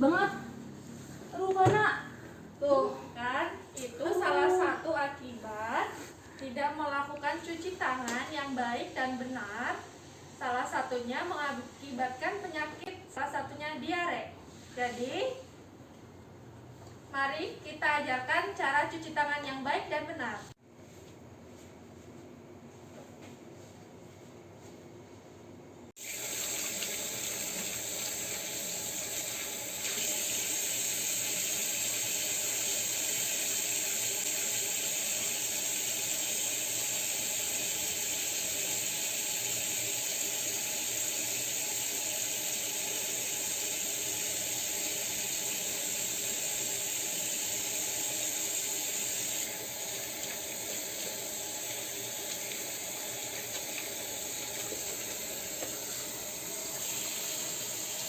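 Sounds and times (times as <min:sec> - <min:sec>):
tap water running into sink: 0:26.0 - 0:58.0.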